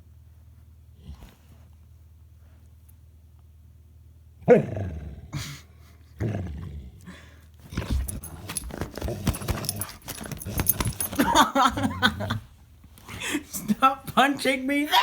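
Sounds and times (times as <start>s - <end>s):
dog play-growling: 6.2s - 12.5s
scuffling and clicking: 7.6s - 11.5s.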